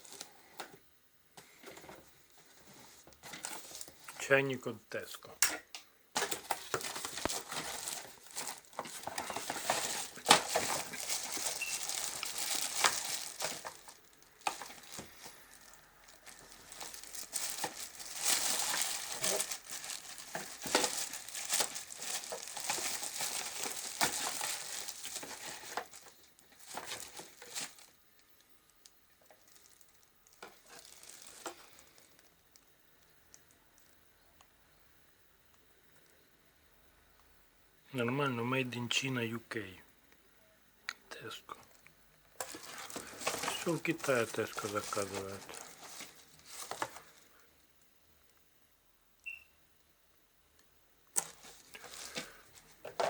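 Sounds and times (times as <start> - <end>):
plastic packaging crinkling: 1.5 - 4.3, 6.2 - 32.7, 42.3 - 47.4, 51.1 - 53.0.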